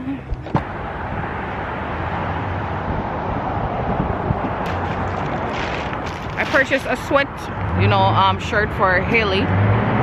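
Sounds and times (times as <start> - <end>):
car road and engine noise: 0.0 - 10.0.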